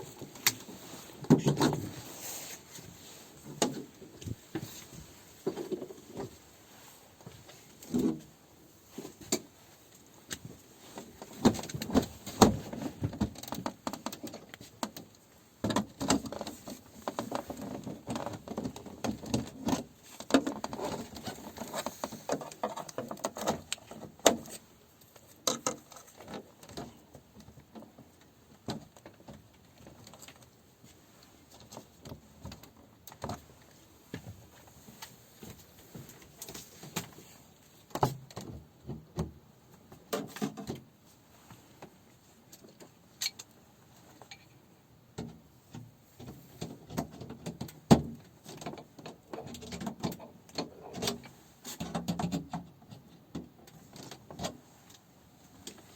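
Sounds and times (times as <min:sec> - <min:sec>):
objects handled clicking and rustling: 0:00.0 - 0:06.5, 0:07.2 - 0:44.6.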